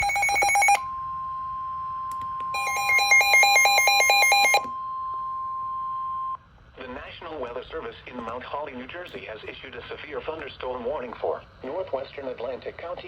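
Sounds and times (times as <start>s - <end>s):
electronic alarm beeping: 0.0s - 6.4s
steady high warning tone: 0.0s - 7.0s.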